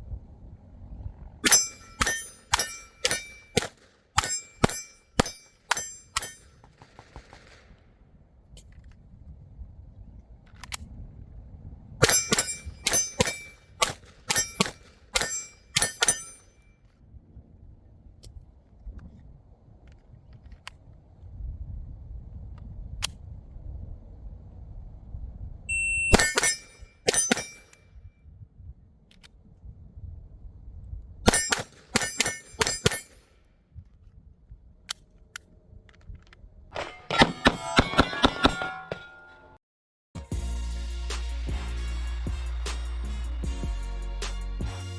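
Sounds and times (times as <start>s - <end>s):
metallic ring of steel target: 1.4s - 6.6s, 12.0s - 16.7s, 25.7s - 27.9s, 31.3s - 33.3s, 36.7s - 39.6s
pistol shots: 1.4s - 7.8s, 31.3s - 33.0s.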